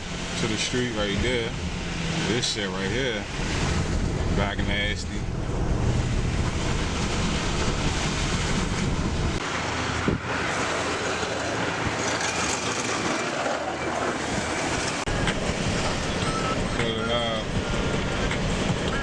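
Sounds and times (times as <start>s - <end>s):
tyre and road noise: 0.0s - 19.0s
low rumble: 1.2s - 9.4s.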